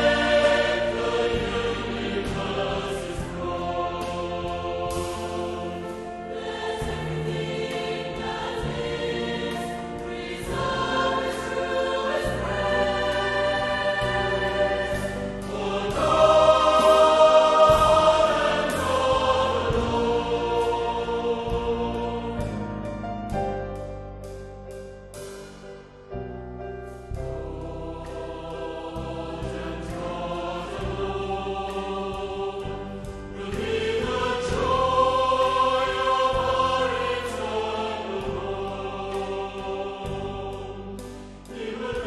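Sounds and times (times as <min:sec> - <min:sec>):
choir singing a slow hymn: 0:00.0 - 0:23.7, 0:27.1 - 0:42.0.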